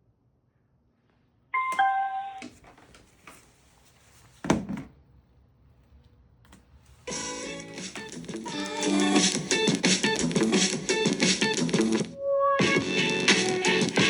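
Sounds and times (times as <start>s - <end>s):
electronic chime: 1.6s - 2.4s.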